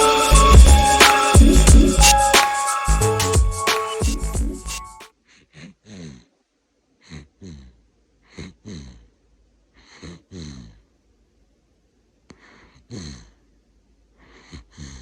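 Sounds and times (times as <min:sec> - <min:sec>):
baby snoring: 0:05.5 - 0:06.3, 0:07.0 - 0:09.1, 0:09.8 - 0:10.8, 0:12.4 - 0:13.4, 0:14.2 - 0:15.0.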